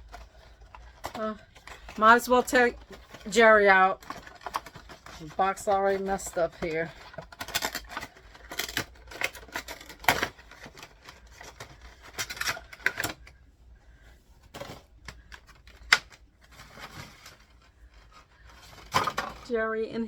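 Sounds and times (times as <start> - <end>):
cardboard box and plastic crinkling: 0.0 - 13.4, 14.4 - 19.7.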